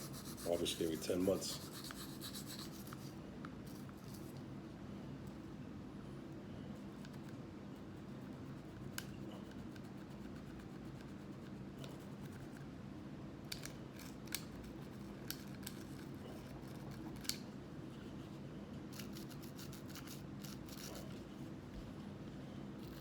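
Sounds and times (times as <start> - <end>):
scratchy brush strokes: 0.0 - 3.2
steady low hum: 0.0 - 23.0.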